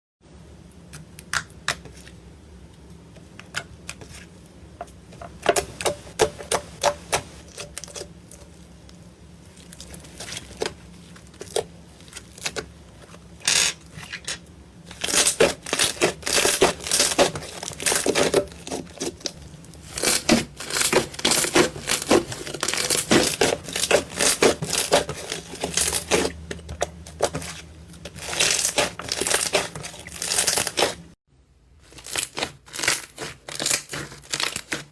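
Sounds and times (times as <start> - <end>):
slime crackling and squishing: 6.8 - 14.1, 14.9 - 31.2, 31.8 - 34.9.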